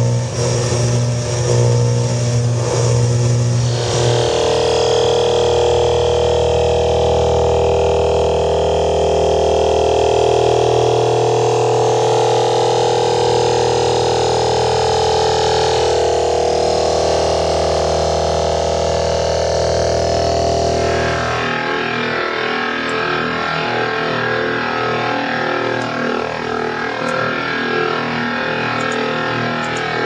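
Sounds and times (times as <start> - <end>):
droning radio tones: 2.1 - 9.4, 19.1 - 30.0.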